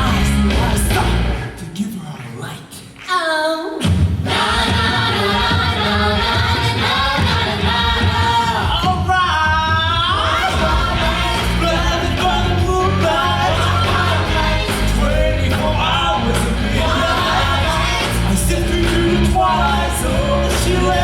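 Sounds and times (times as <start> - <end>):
bass and drum beat: 0.0 - 1.5, 3.8 - 21.0
rock and roll song: 0.0 - 1.9, 3.9 - 21.0
person singing: 8.2 - 21.0.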